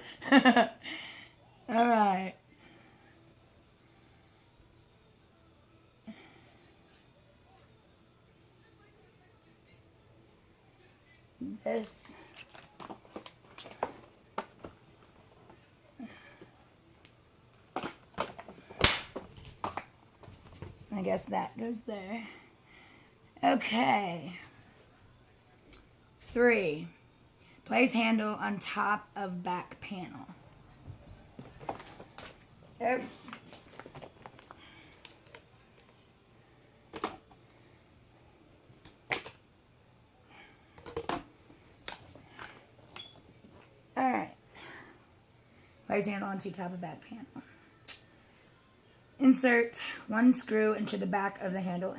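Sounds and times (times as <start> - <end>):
plastic vacuum parts knocking: 40.8 - 41.3
vacuum cleaner parts clicking and knocking: 40.8 - 43.1.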